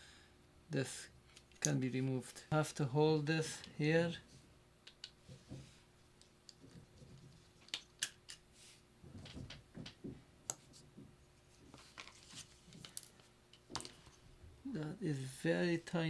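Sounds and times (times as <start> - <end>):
soft handling rustle: 10.6 - 16.0.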